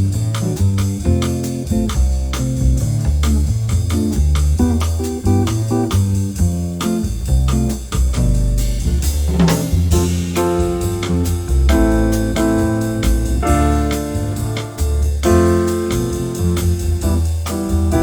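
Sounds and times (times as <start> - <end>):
bass line: 0.0 - 18.0
steady beat: 0.0 - 18.0
electric piano chords: 9.9 - 18.0.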